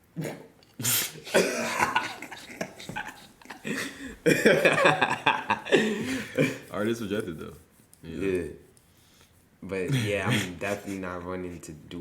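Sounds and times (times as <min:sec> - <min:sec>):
person coughing: 0:01.3 - 0:02.2.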